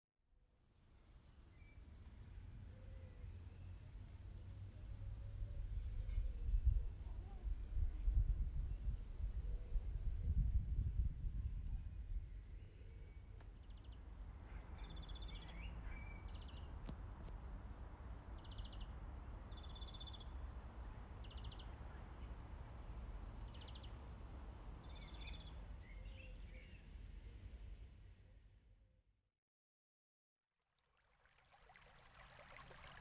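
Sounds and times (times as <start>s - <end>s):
wind rumble on microphone: 3.6s - 18.4s
songbirds singing trills: 4.5s - 7.5s, 18.4s - 20.4s, 24.8s - 27.4s.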